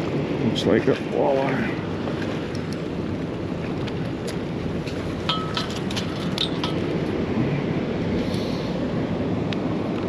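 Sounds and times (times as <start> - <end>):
fishing tackle clinking: 5.2 - 6.9.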